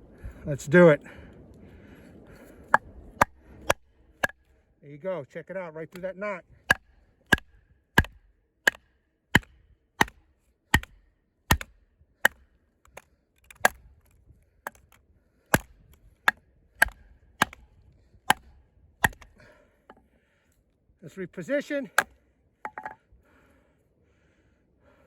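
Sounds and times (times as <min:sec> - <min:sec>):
knife hammered through log: 0:02.7 - 0:04.4, 0:06.7 - 0:12.4, 0:13.5 - 0:13.8, 0:15.5 - 0:17.7, 0:18.3 - 0:19.3.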